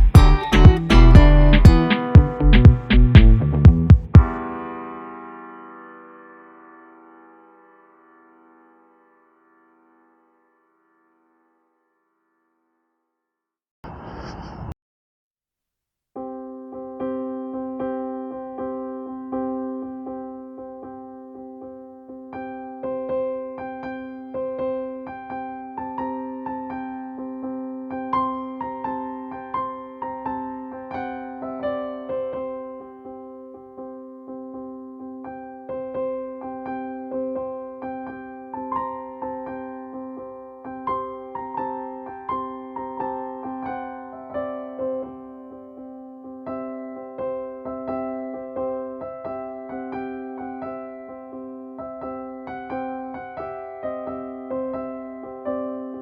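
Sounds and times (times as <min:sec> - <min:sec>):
soft piano music: 0:00.0 - 0:11.4, 0:16.2 - 0:56.0.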